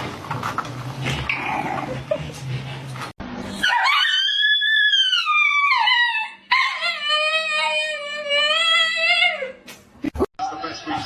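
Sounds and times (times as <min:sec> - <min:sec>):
dog howling: 0:03.6 - 0:09.6.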